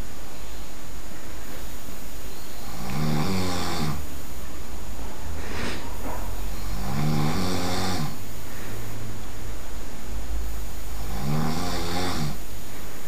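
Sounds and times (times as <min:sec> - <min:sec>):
person snoring loudly: 0:02.6 - 0:04.1, 0:06.6 - 0:08.2, 0:10.9 - 0:12.4
breathy breath: 0:08.4 - 0:09.1.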